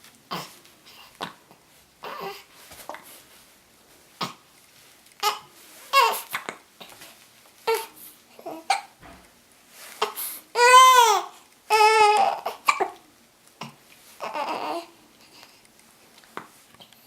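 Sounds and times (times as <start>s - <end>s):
baby crying: 2.0s - 2.5s, 5.2s - 6.4s, 7.6s - 8.9s, 10.0s - 13.0s, 14.2s - 15.0s
baby hiccups: 4.2s - 4.4s, 8.5s - 9.0s.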